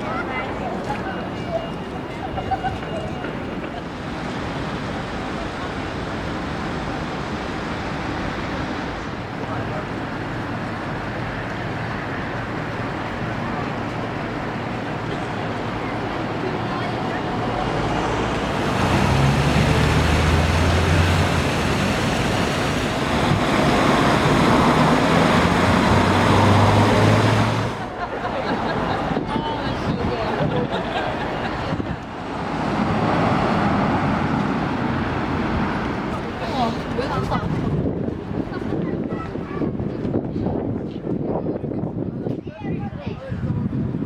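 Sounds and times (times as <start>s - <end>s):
city street traffic rumble: 0.0s - 44.0s
engine humming going by: 3.2s - 38.2s.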